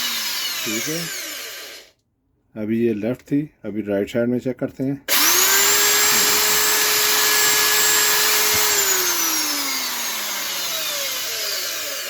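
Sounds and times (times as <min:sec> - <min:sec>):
electric drill whining: 0:00.0 - 0:01.9, 0:05.1 - 0:12.0
drill trigger click: 0:05.1 - 0:12.0.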